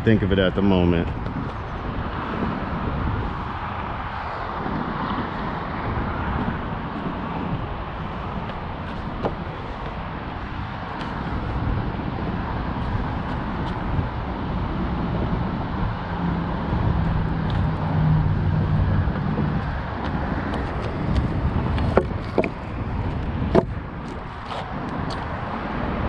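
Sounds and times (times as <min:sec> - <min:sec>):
street traffic noise: 0:00.0 - 0:26.0
vehicle passing by: 0:02.0 - 0:26.0
sharp knocks: 0:20.5 - 0:24.2.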